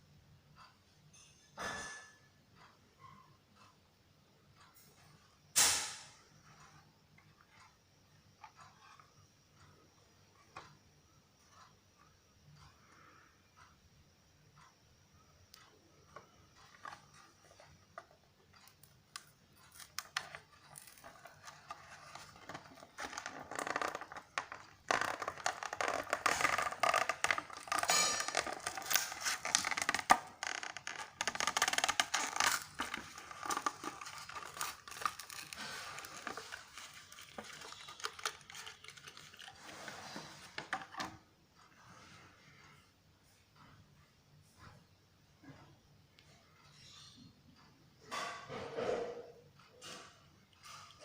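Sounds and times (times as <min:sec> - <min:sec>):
packaging being torn and crinkled: 0:19.8 - 0:39.6.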